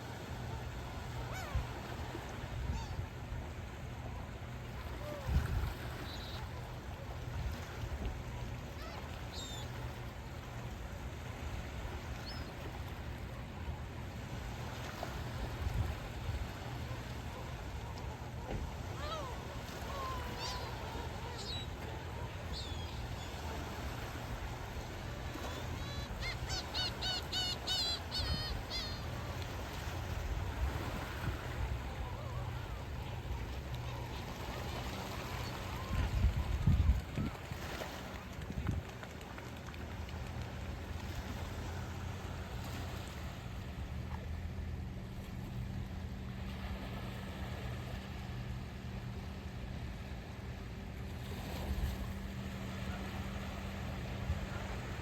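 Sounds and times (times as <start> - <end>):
ocean waves washing: 0.0 - 55.0
bird short cries: 25.5 - 29.2.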